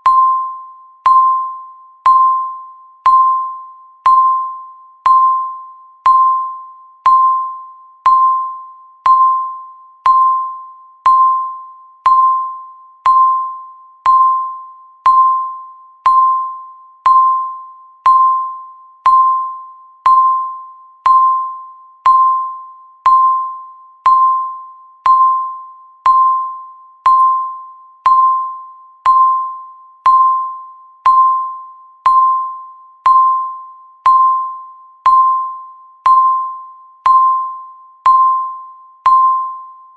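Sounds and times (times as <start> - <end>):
countdown timer beeps: 0.0 - 39.9.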